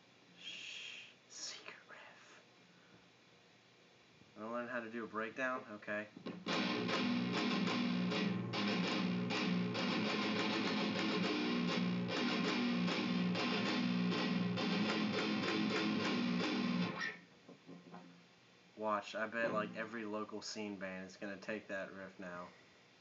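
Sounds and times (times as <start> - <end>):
distorted electric guitar riff: 6.2 - 17.2.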